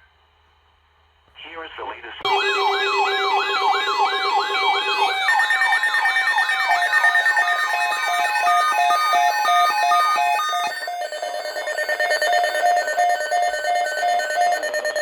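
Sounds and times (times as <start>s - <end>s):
steady siren tones: 2.2s - 15.0s
rising whoop siren: 2.3s - 15.0s.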